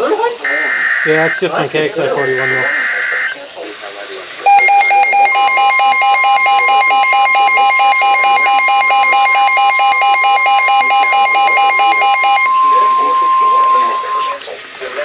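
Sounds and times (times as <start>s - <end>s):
rapid electronic beeping: 4.5s - 14.4s
steady high alarm tone: 4.5s - 14.4s.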